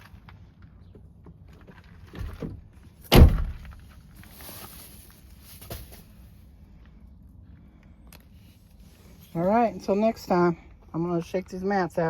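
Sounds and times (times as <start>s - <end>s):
truck door slamming: 2.3s - 3.8s.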